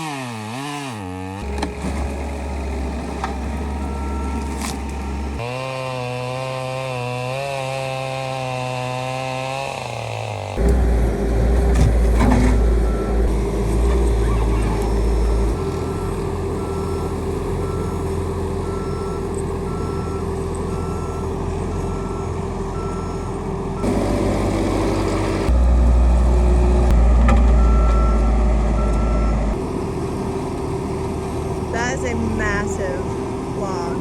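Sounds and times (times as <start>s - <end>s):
diesel engine running: 0.5s - 34.0s
reversing alarm beeping: 3.7s - 5.4s, 12.5s - 13.4s, 14.0s - 24.0s, 27.6s - 29.6s.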